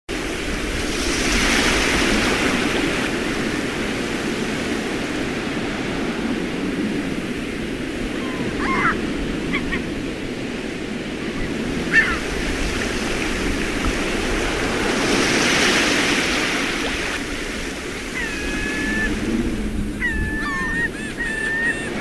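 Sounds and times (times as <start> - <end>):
wind and surf rushing: 0.1 - 22.0
short high calls: 20.0 - 22.0.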